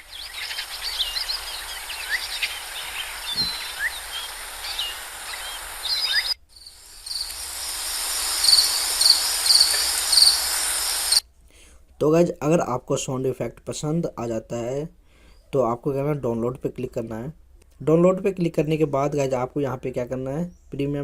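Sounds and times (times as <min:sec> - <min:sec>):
short high bird chirp: 0:00.0 - 0:06.4
small birds chirping: 0:00.0 - 0:11.2
steady hiss: 0:00.0 - 0:11.3.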